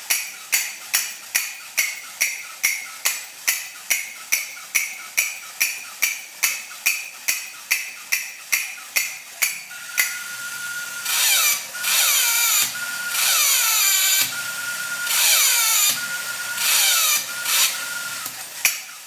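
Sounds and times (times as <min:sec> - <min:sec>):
toy cymbal clap: 0:00.0 - 0:10.2, 0:17.6 - 0:19.0
toy motor high whine: 0:00.0 - 0:19.0.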